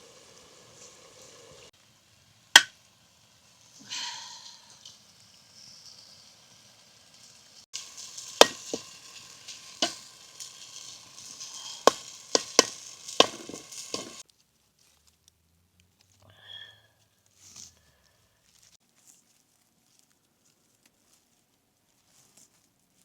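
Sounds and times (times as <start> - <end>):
food sizzling in a pan: 0.0 - 14.3
utensil knocking against pan: 8.4 - 9.0, 9.8 - 10.1, 11.8 - 14.2.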